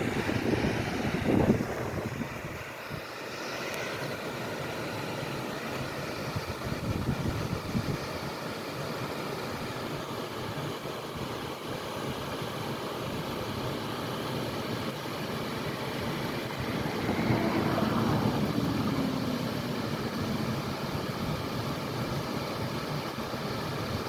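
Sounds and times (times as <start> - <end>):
waterfall rushing: 13.3 - 24.0
low falling tone: 16.5 - 21.1.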